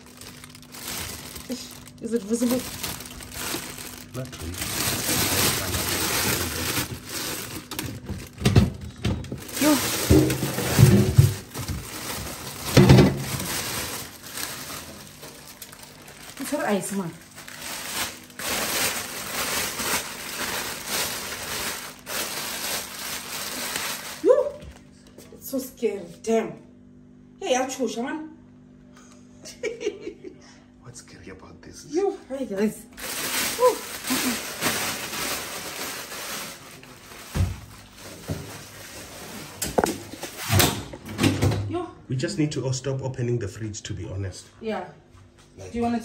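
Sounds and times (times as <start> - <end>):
crunching and crinkling: 0.0 - 25.0, 33.0 - 40.8.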